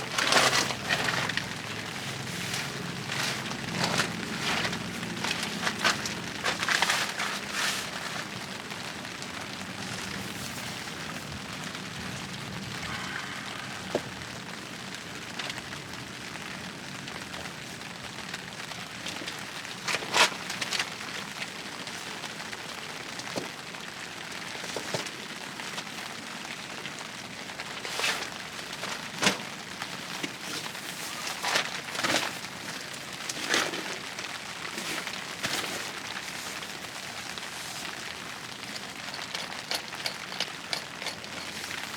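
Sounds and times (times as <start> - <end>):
rustling: 0.0 - 8.6, 24.2 - 41.9
rain hissing on a tent: 0.0 - 41.9.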